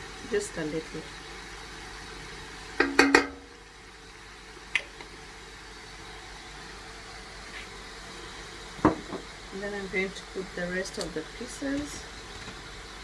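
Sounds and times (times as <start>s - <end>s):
steady low hum: 2.2s - 4.5s.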